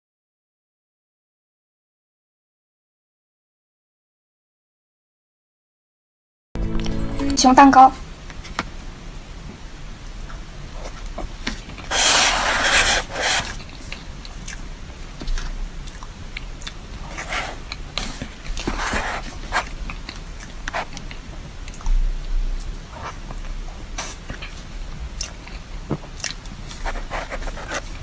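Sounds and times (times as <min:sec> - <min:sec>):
chewing with wet clicks: 0:13.6 - 0:14.7, 0:15.3 - 0:16.8, 0:19.9 - 0:21.9, 0:25.2 - 0:26.6.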